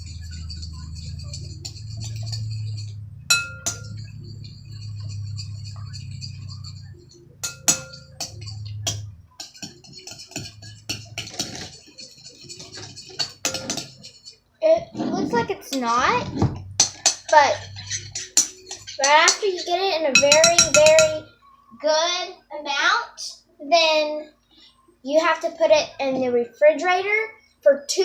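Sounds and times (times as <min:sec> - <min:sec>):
steady low hum: 0:00.0 - 0:19.3
spoon scraping in bowl: 0:00.0 - 0:21.3
spoon clinking against bowl: 0:00.1 - 0:14.4, 0:16.8 - 0:19.6, 0:20.2 - 0:21.3.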